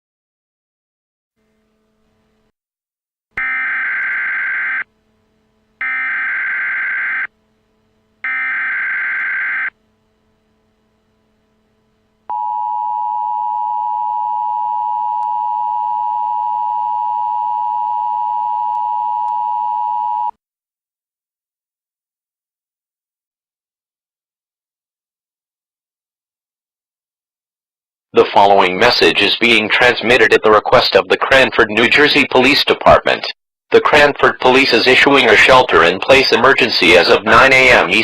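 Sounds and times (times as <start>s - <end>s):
faint low hum: 4.0s - 20.2s.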